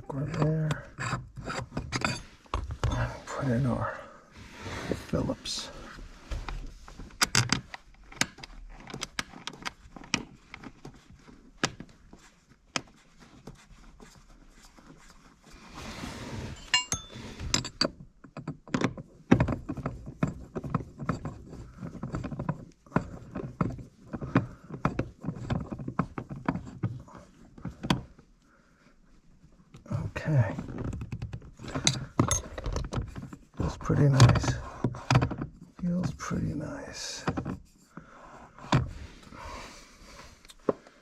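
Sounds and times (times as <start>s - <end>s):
screwdriver and metal hardware clinking: 0.3s - 3.1s, 16.6s - 18.6s, 31.6s - 33.3s.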